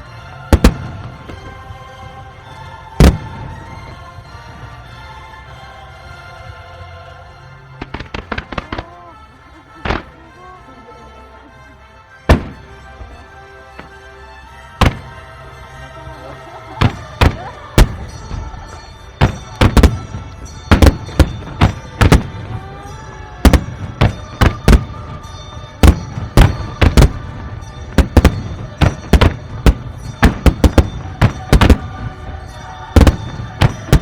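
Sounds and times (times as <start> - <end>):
music: 0.0 - 34.0
firework shells bursting: 16.8 - 22.5, 23.4 - 34.0.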